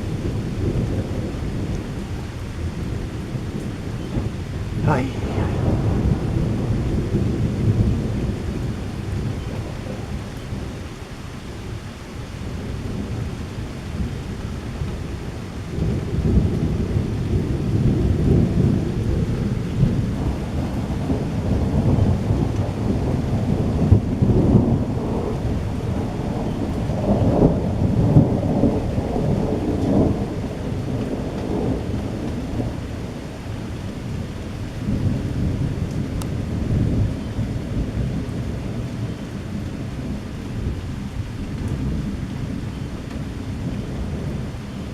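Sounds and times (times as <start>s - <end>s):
steady rain: 0.0s - 44.9s
thunder rumbling: 0.0s - 44.9s.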